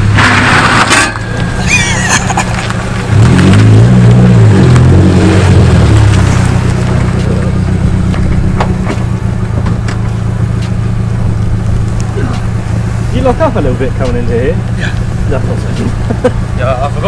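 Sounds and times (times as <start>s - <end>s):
car engine revving: 0.0s - 17.0s.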